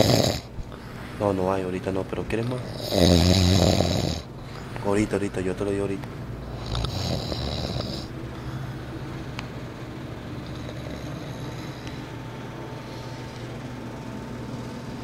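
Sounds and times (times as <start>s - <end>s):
pet snoring: 0.0s - 0.5s, 2.4s - 4.3s, 6.4s - 9.2s, 10.2s - 12.1s.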